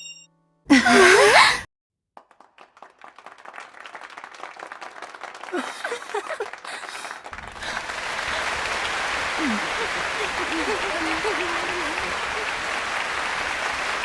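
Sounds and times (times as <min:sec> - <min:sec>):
group applause: 0:02.2 - 0:14.0
voices calling out: 0:07.4 - 0:14.0
loud vocal burst: 0:07.5 - 0:14.0.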